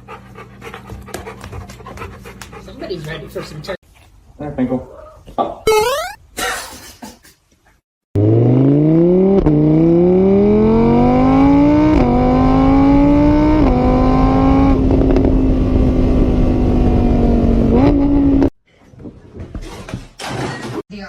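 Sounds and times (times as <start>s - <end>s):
car engine accelerating: 8.2s - 18.5s.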